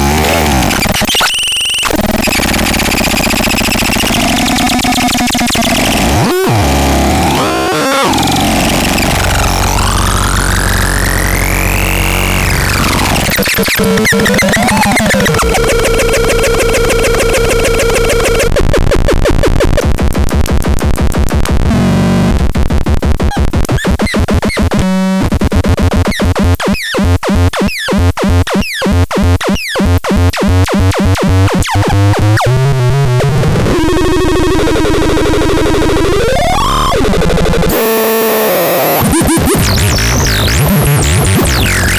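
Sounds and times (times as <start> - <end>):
harsh electronic synth noise: 0.0 - 41.9.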